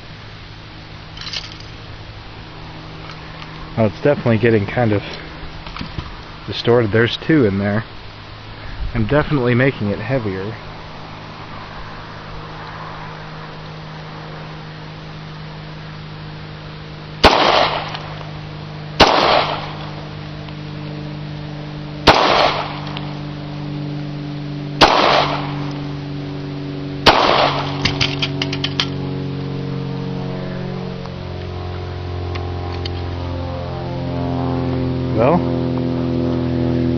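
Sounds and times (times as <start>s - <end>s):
gunshots with short echo: 17.2s - 18.0s, 19.0s - 19.8s, 22.0s - 22.8s, 24.8s - 25.6s, 27.0s - 28.3s.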